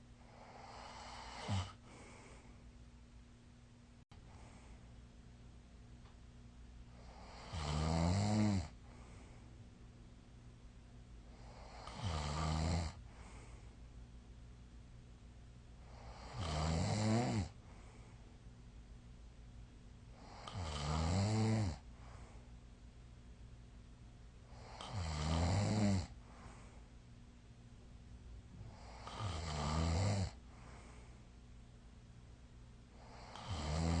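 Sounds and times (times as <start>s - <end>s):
quiet breathing: 0.0s - 3.0s, 4.1s - 5.2s, 6.8s - 10.0s, 11.2s - 14.2s, 15.6s - 18.6s, 20.0s - 22.9s, 24.4s - 27.3s, 28.5s - 31.7s, 32.9s - 34.0s
person snoring: 0.3s - 2.4s, 7.0s - 9.1s, 11.4s - 13.5s, 15.9s - 17.6s, 20.2s - 21.8s, 24.5s - 26.6s, 28.7s - 31.0s, 33.0s - 34.0s.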